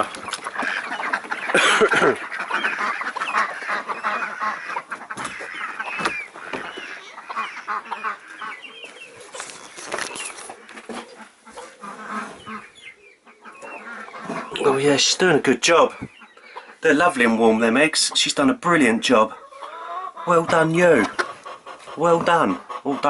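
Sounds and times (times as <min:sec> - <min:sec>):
hens clucking: 0:00.0 - 0:23.0
rustling: 0:02.1 - 0:12.8.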